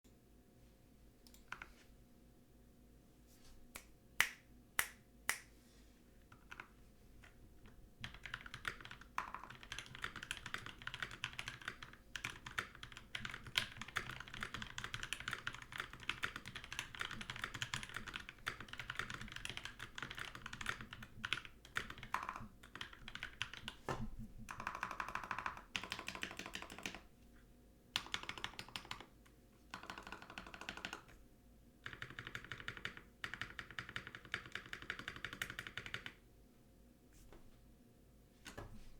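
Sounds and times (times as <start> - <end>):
typing on mechanical keyboard: 6.3 - 23.8, 24.4 - 27.1, 28.0 - 31.2, 31.8 - 36.2.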